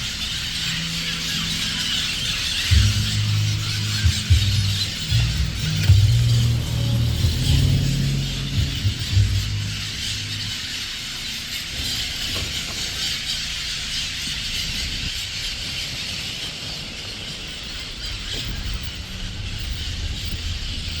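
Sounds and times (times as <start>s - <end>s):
low rumble: 0.4s - 11.5s.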